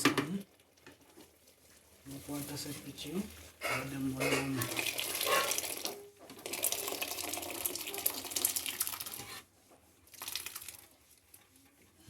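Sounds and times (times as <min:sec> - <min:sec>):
water pouring: 0:04.4 - 0:09.4, 0:10.1 - 0:11.3.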